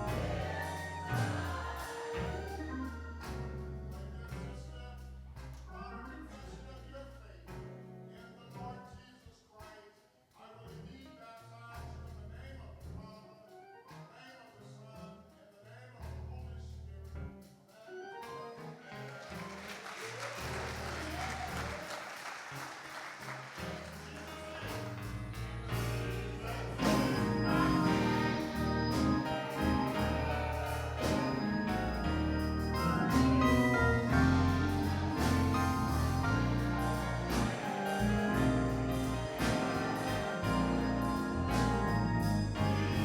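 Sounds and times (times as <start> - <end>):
live gospel band playing: 0.0 - 8.6, 17.9 - 43.0
hand clapping: 19.0 - 25.4, 32.7 - 42.2.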